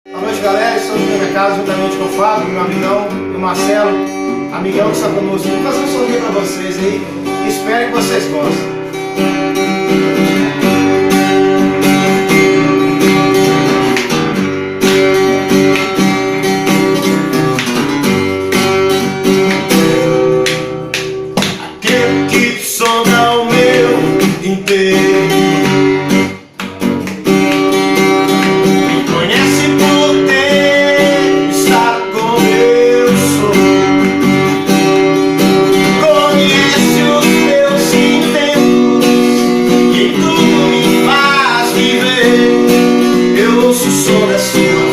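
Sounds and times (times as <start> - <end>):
acoustic guitar strumming: 0.1 - 44.9.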